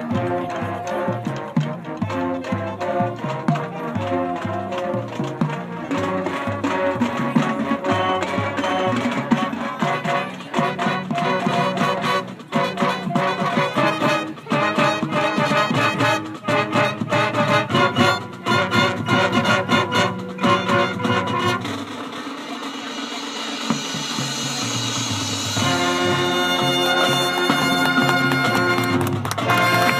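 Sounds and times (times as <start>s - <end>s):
brass melody: 0.0s - 29.9s
drum hits: 11.9s - 29.9s.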